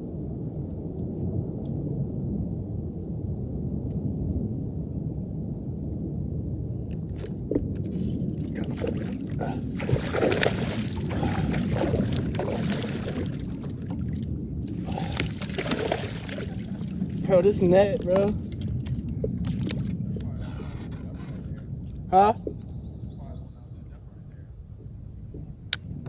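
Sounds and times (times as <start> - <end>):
steady low rumble: 0.0 - 26.0
water sloshing and splashing: 7.2 - 22.0.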